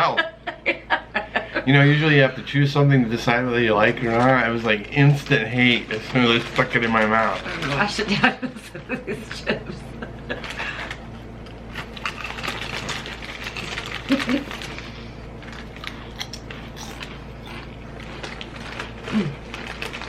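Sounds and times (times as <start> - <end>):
chips crunching while chewing: 3.8 - 8.1, 10.3 - 20.0.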